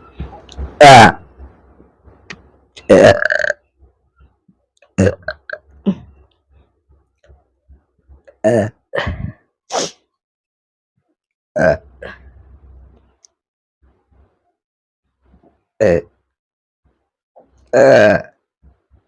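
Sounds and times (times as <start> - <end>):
woman burping: 2.8 - 3.6, 5.0 - 6.2, 17.7 - 18.3.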